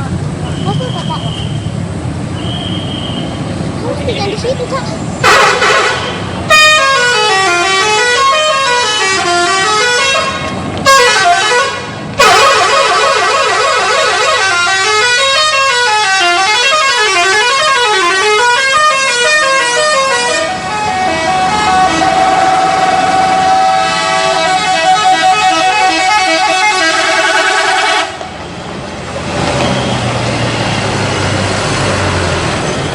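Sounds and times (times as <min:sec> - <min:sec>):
musical bus horn melody: 0:05.2 - 0:28.2.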